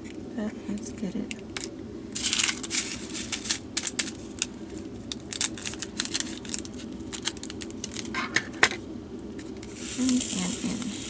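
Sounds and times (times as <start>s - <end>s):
plastic bag crinkling and rattling: 2.2s - 8.2s, 9.7s - 11.0s.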